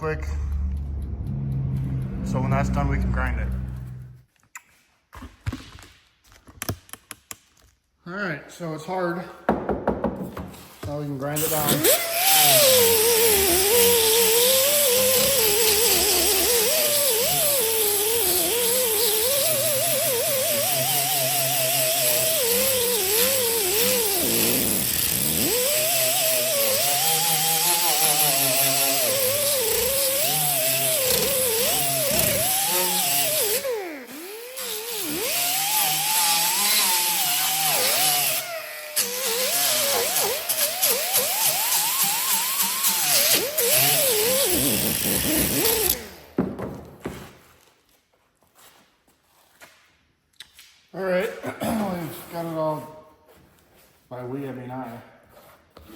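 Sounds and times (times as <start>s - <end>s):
electric grinder on fiberglass: 11.4s - 46.2s.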